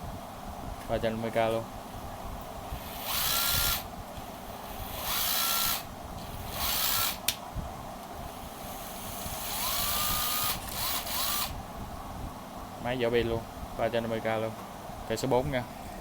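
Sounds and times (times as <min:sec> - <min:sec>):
cordless drill motor whining: 0:02.8 - 0:03.9, 0:04.5 - 0:07.4, 0:08.3 - 0:11.6.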